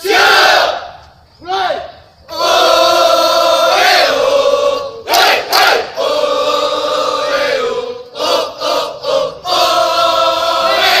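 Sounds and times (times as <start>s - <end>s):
loud shouts: 0.0s - 6.1s
group singing in unison: 2.3s - 11.0s.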